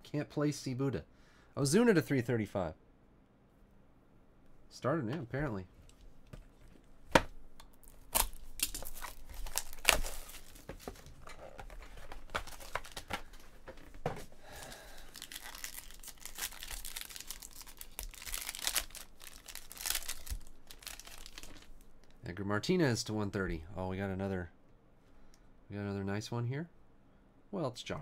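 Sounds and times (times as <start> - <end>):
packaging tearing and crinkling: 7.8 - 13.4, 14.6 - 21.8.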